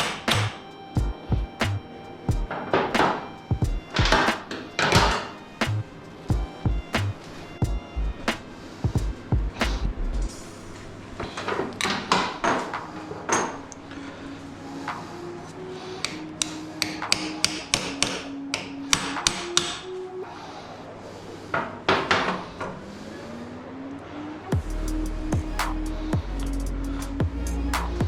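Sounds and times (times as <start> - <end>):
quiet background music: 0.0 - 28.0.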